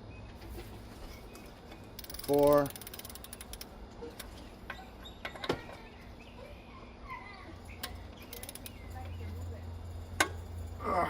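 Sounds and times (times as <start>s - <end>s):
tools clicking and knocking: 1.7s - 5.7s, 7.7s - 9.2s, 9.9s - 10.8s
ratchet wrench clicking: 2.0s - 4.3s, 7.7s - 9.2s.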